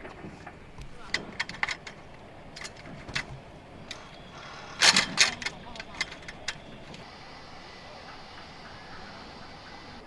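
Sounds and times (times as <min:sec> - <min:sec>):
objects clicking and knocking: 0:00.0 - 0:07.0
objects clattering: 0:00.0 - 0:07.1.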